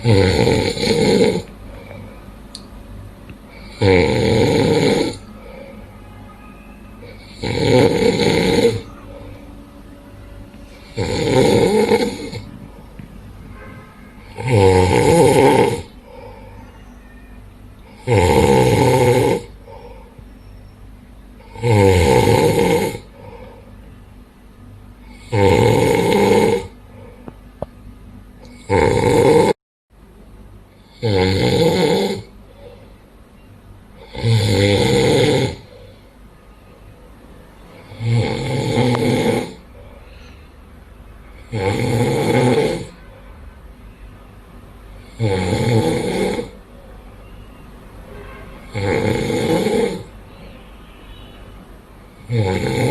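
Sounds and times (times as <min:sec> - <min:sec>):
man snoring: 0:00.0 - 0:01.5, 0:03.5 - 0:05.2, 0:07.0 - 0:08.9, 0:10.7 - 0:12.5, 0:14.2 - 0:16.3, 0:17.8 - 0:19.9, 0:21.4 - 0:23.4, 0:25.0 - 0:26.8, 0:28.4 - 0:29.6, 0:30.8 - 0:32.3, 0:34.0 - 0:35.8, 0:37.8 - 0:39.6, 0:41.4 - 0:43.0, 0:45.0 - 0:46.6, 0:48.7 - 0:50.1, 0:52.2 - 0:52.9
quiet breathing: 0:01.6 - 0:02.4, 0:05.1 - 0:07.4, 0:15.8 - 0:18.1, 0:19.5 - 0:20.7, 0:23.0 - 0:23.9, 0:26.8 - 0:27.5, 0:32.4 - 0:33.2, 0:35.6 - 0:36.3, 0:39.6 - 0:41.4.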